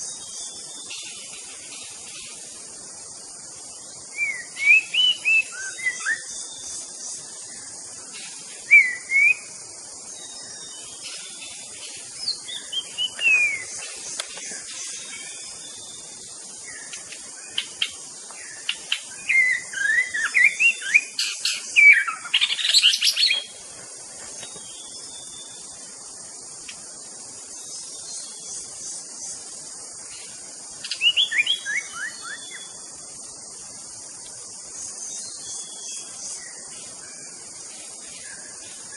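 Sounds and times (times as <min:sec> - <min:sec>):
steady high hiss: 0:00.0 - 0:38.9
bird singing whistled phrases: 0:04.1 - 0:06.6, 0:08.7 - 0:09.5, 0:12.2 - 0:13.7, 0:19.1 - 0:23.5, 0:30.9 - 0:32.8.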